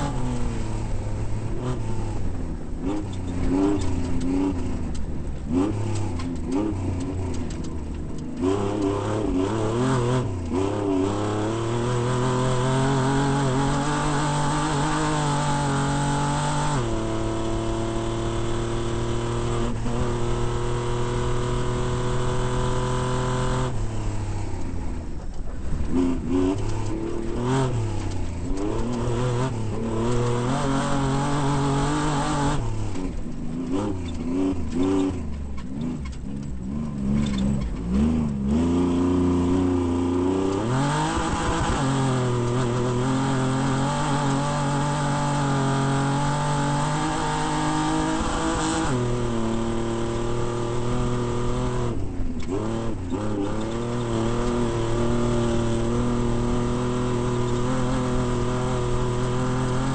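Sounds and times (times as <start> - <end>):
race vehicle engine revving: 0.0 - 59.9.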